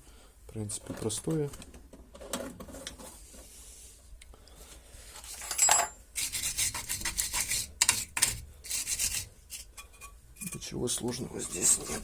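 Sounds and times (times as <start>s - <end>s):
metal tools scraping and rubbing: 5.2s - 12.0s.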